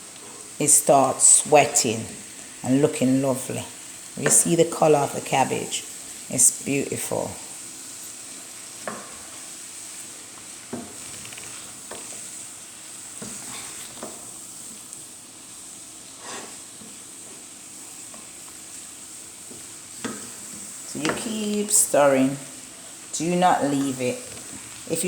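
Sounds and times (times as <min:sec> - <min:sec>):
vegetables sizzling in a pan: 0:00.0 - 0:25.0
utensil scraping a pan: 0:13.1 - 0:14.4, 0:16.1 - 0:18.4.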